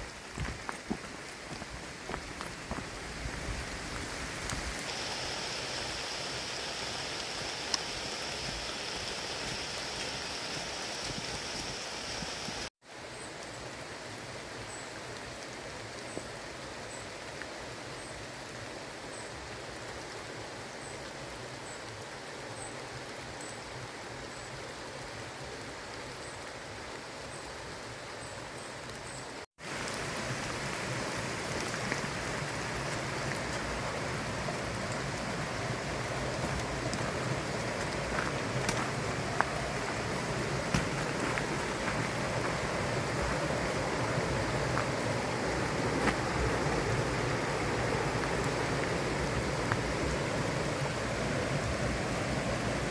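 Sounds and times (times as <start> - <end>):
gusting wind: 0.0 - 12.7, 29.6 - 52.9
steady rain hiss: 0.0 - 52.9
water drip ticks: 6.4 - 12.7, 30.7 - 51.8.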